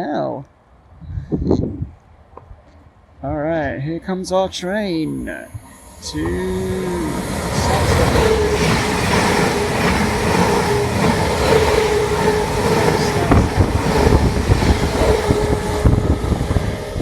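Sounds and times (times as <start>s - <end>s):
train whine: 4.4s - 17.0s
train wheels rumbling on rails: 5.1s - 17.0s.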